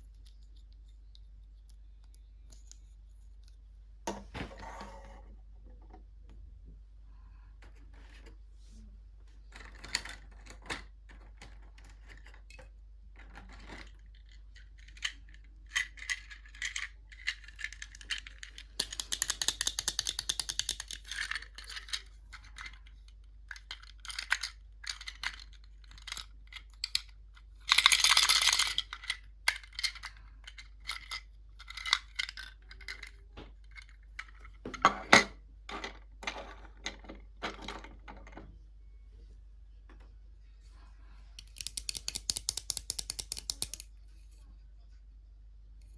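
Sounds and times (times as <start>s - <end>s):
plastic toy pieces clicking and rattling: 13.2s - 34.6s, 41.4s - 43.9s.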